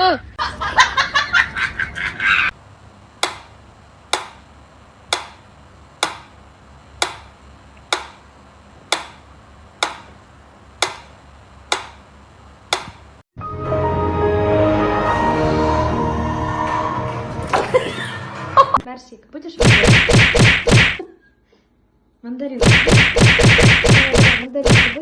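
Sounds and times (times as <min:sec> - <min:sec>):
rapid rattling burst: 0:19.6 - 0:21.0, 0:22.6 - 0:25.0.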